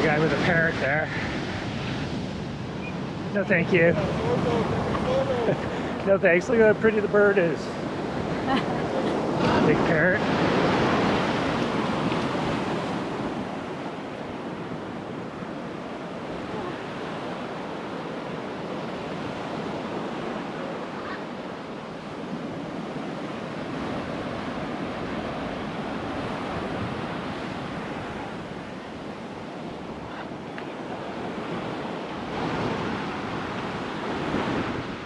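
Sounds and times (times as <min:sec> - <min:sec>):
ocean surf breaking: 0:00.0 - 0:35.0
wind on microphone: 0:07.6 - 0:35.0.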